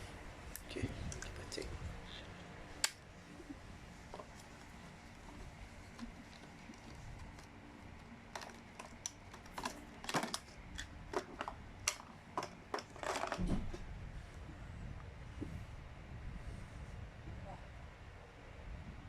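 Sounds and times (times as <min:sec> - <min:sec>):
packaging rustling: 0:04.0 - 0:13.8.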